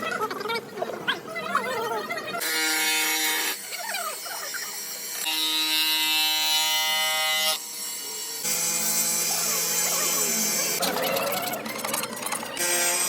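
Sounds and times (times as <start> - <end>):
power tool motor whine: 2.4 - 10.9.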